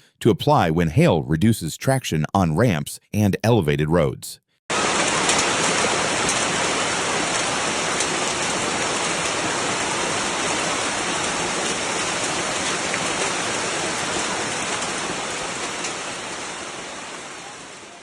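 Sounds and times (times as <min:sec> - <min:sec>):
heavy rain on hard surfaces: 0:04.7 - 0:18.0.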